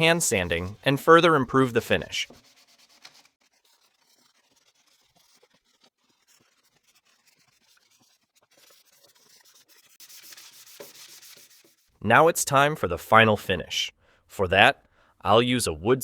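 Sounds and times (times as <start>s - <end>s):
sandpaper rubbing on wood: 0.0s - 12.0s.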